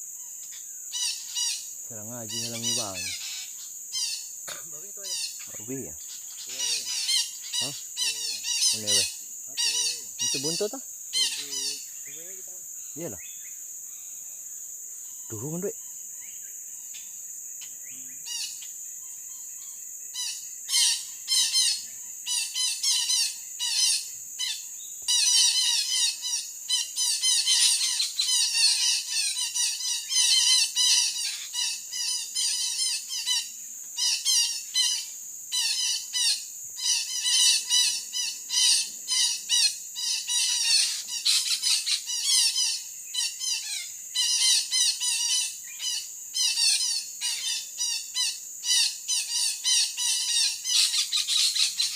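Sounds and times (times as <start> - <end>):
high insect drone: 0.0 - 51.9
parakeets squawking: 1.0 - 4.2, 5.0 - 11.9.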